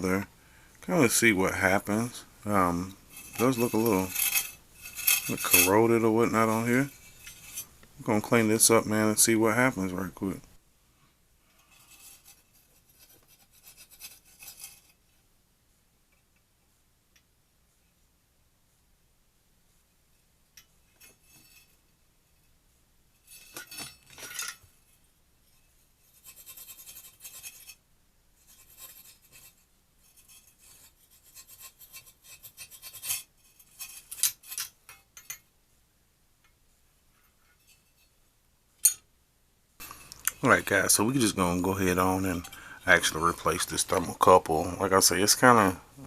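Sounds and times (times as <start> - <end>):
rasping scraping rubbing: 3.1 - 7.7.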